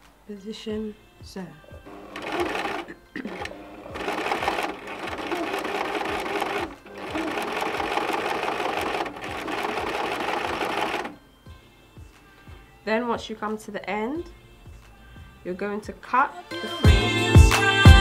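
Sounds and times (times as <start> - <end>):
sewing machine stitching: 1.9 - 11.2.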